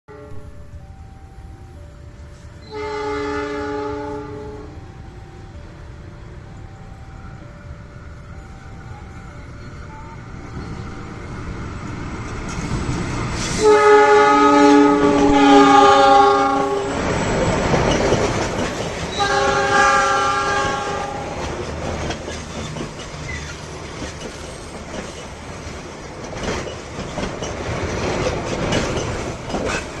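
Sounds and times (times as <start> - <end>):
train air horn blasts: 0.1 - 0.7, 2.6 - 4.8, 13.4 - 17.0, 19.1 - 21.5
train wheels rumbling and clattering: 4.2 - 30.0.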